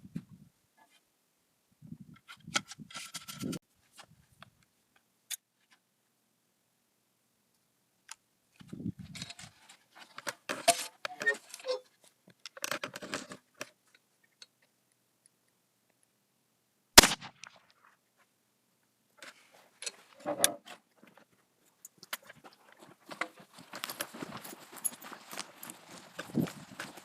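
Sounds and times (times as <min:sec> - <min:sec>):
gun handling clicks and rustling: 0:02.2 - 0:03.6, 0:08.1 - 0:14.8, 0:19.2 - 0:27.0
shotgun shot: 0:17.0 - 0:17.5.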